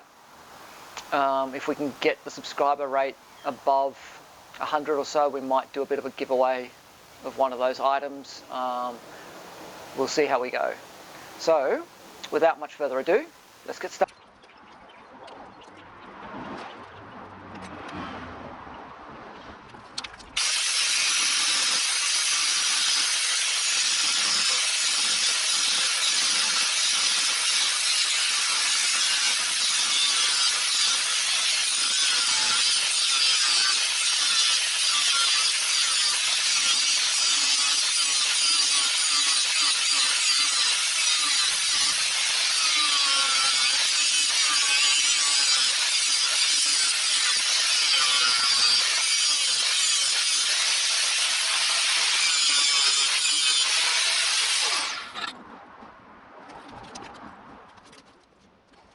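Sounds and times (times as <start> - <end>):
power tool grinding steel: 20.4 - 55.3.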